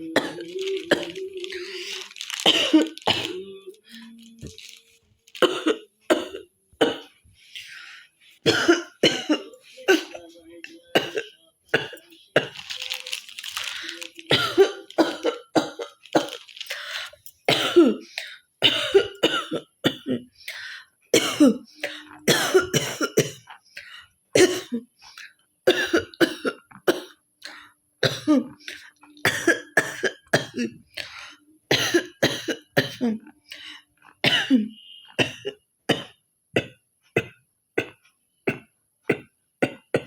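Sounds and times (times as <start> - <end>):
woman coughing: 0.0 - 4.2, 5.4 - 7.1, 8.5 - 10.3, 10.9 - 20.3, 21.2 - 23.5, 24.4 - 24.9, 25.7 - 27.1, 28.0 - 30.8, 31.7 - 33.2, 34.2 - 37.4
woman clearing her throat: 0.0 - 4.7, 13.6 - 16.4, 21.2 - 23.5.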